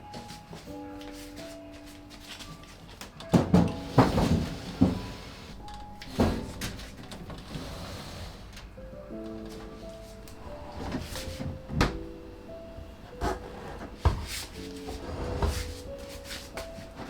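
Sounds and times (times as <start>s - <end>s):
soft background music: 0.0s - 17.0s
household objects knocking and thudding: 3.3s - 5.1s.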